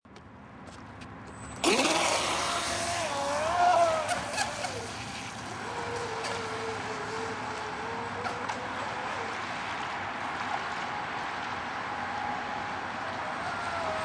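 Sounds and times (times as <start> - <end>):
model boat motor: 1.6 - 9.4.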